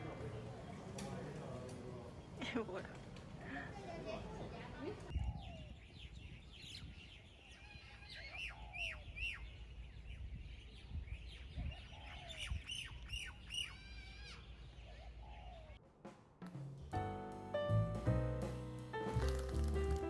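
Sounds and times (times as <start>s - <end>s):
small birds chirping: 0.0s - 15.8s.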